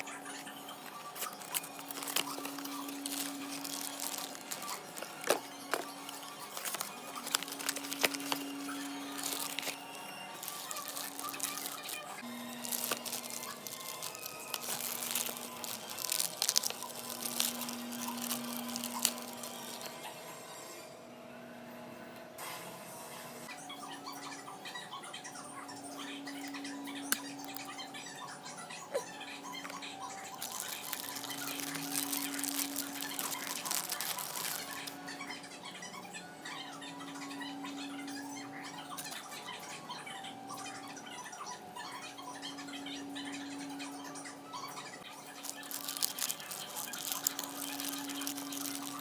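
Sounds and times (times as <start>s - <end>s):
packaging crinkling and rustling: 0.0s - 20.0s, 29.6s - 35.0s, 45.2s - 49.0s
packaging tearing: 0.4s - 20.0s, 30.3s - 35.0s, 45.3s - 49.0s.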